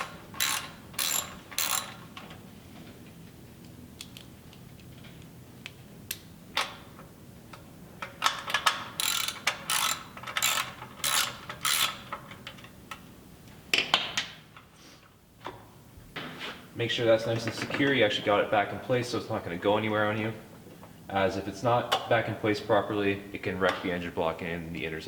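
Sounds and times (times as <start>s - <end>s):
ratchet wrench clicking: 0.0s - 2.0s, 8.6s - 12.3s.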